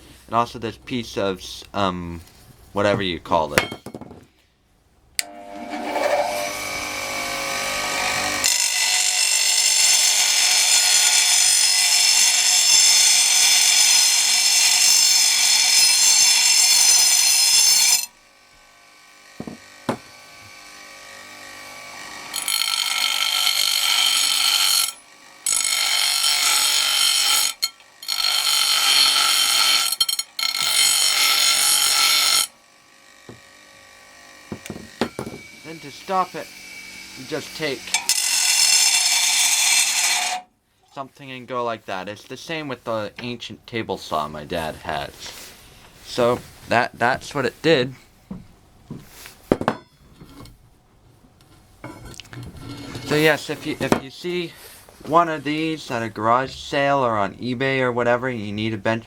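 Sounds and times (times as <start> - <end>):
bench grinder grinding metal: 5.2 - 40.5, 51.8 - 54.1.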